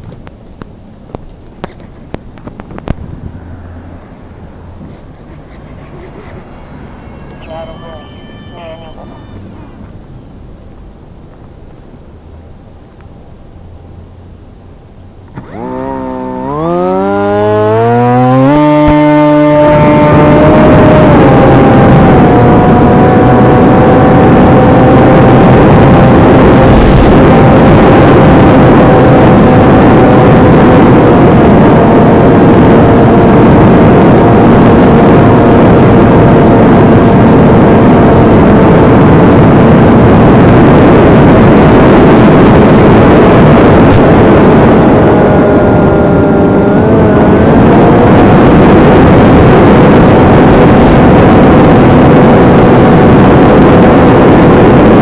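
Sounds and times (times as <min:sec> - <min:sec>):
electric motor whine: 0:15.2 - 0:55.0
loud rushing noise: 0:25.6 - 0:28.5.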